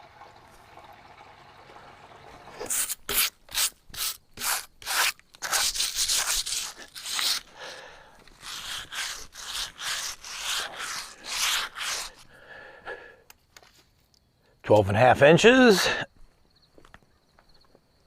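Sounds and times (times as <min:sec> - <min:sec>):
rubbing or scraping strokes: 0:02.5 - 0:12.3.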